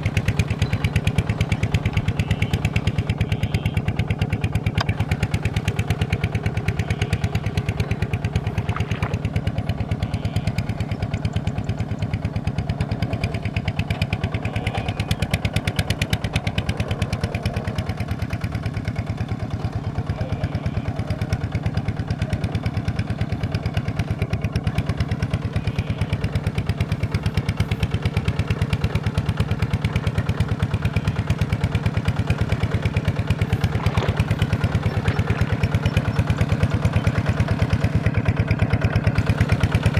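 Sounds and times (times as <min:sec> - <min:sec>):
farm machinery engine pulsing: 0:00.0 - 0:39.9.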